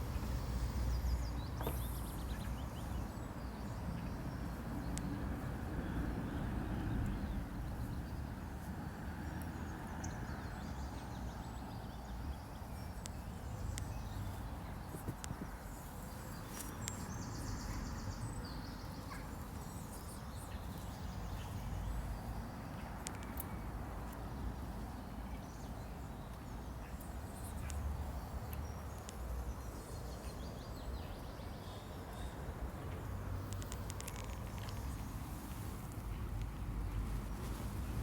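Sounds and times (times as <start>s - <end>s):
birds chirping: 0.0s - 8.7s
low rumble and hiss: 0.0s - 22.6s
small clicks: 33.4s - 36.6s.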